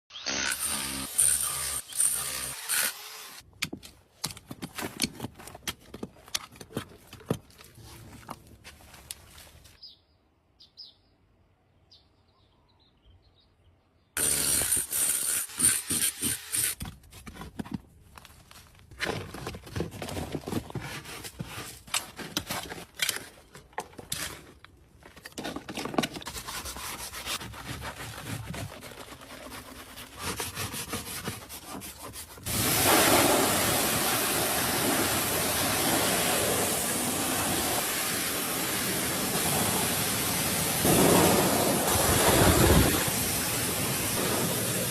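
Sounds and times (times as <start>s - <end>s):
spraying water hiss: 32.5s - 44.9s.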